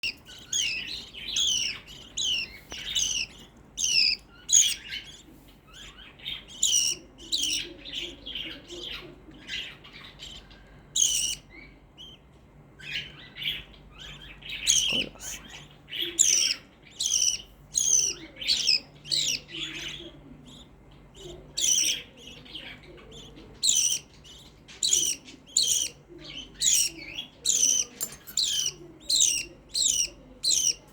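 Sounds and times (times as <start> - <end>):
parrot chirping shrilly: 0.0 - 5.0, 11.0 - 11.4, 16.2 - 19.4.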